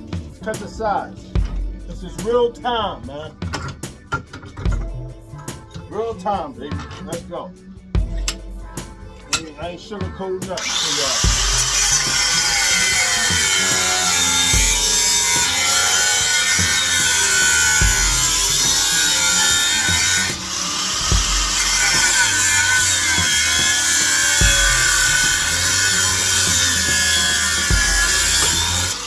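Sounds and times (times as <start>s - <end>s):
power saw cutting steel: 8.2s - 29.0s.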